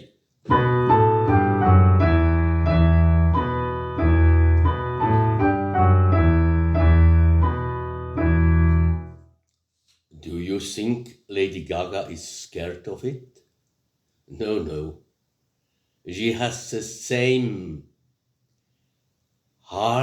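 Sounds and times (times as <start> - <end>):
piano playing slow melody: 0.5 - 9.3.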